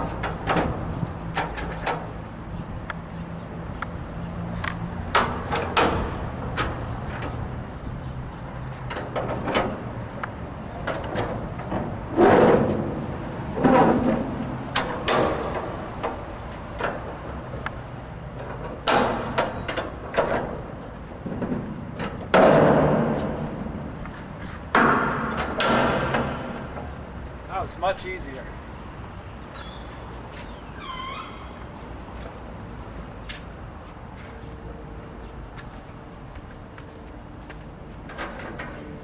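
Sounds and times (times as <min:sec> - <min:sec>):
metal latch clicks and clanks: 0:00.0 - 0:02.2, 0:04.6 - 0:07.5, 0:08.8 - 0:12.8, 0:13.6 - 0:16.2, 0:16.8 - 0:23.6, 0:24.7 - 0:27.0.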